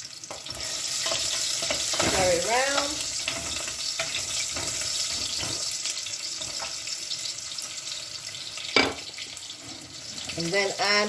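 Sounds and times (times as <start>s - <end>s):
food sizzling in oil: 0.0s - 11.0s
stirring strokes in pan: 0.3s - 7.0s.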